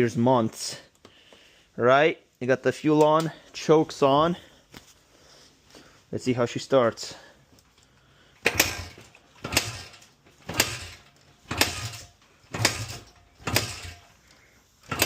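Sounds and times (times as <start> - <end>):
motorcycle engine being kick-started: 8.4 - 15.0.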